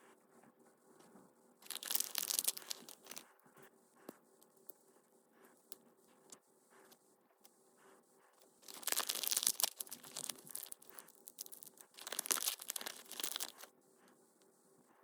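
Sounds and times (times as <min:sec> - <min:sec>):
plastic packaging crinkling and tearing: 0:01.6 - 0:03.2, 0:08.6 - 0:13.7.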